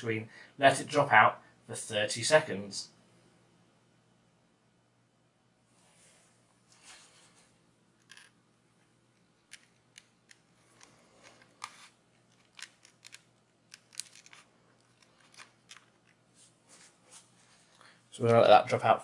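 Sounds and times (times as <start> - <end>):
soft rustle: 5.7 - 9.2, 10.5 - 18.0.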